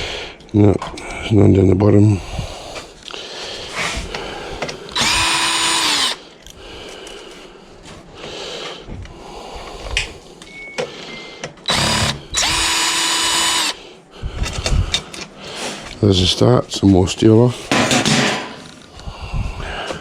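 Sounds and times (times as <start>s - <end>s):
power drill whine: 5.0s - 6.2s, 11.1s - 13.8s.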